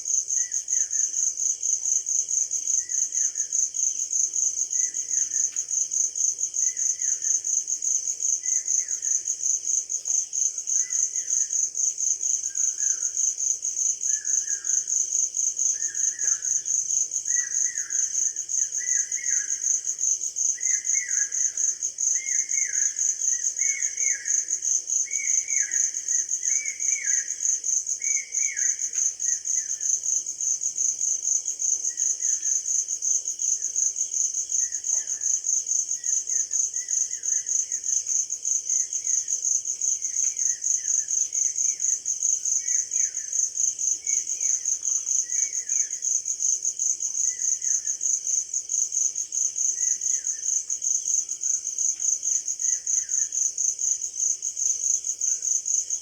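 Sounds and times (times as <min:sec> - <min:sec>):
crickets chirping: 0:00.0 - 0:56.0.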